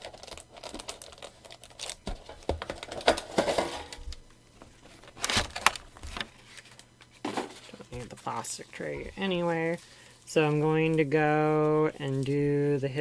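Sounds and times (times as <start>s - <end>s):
packs rustling: 0.0s - 12.7s
plastic tray clicks and crinkles: 5.0s - 6.9s.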